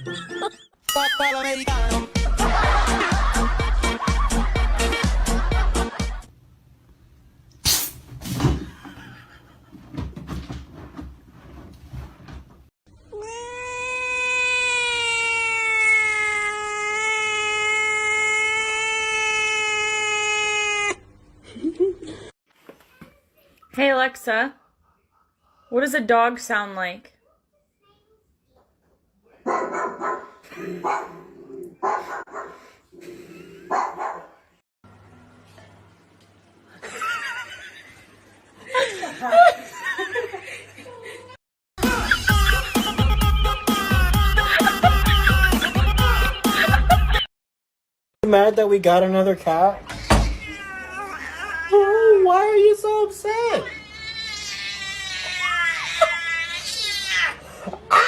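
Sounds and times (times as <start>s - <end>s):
cat crying: 13.1s - 21.0s, 50.2s - 51.7s, 53.6s - 58.0s
dog barking: 29.4s - 32.7s, 33.7s - 34.4s.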